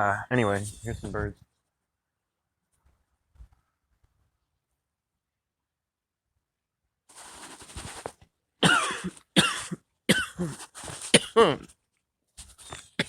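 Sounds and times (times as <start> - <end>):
man coughing hard: 8.6 - 11.7.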